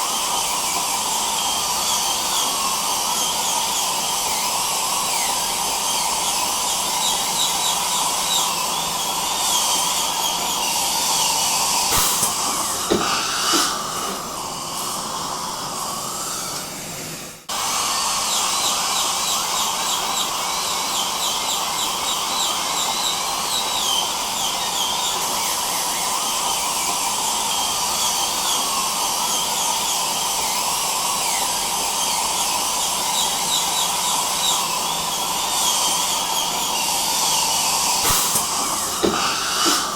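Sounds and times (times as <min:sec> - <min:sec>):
dental drill whining: 0:00.0 - 0:39.9
dental suction hiss: 0:00.7 - 0:16.8, 0:31.0 - 0:39.9.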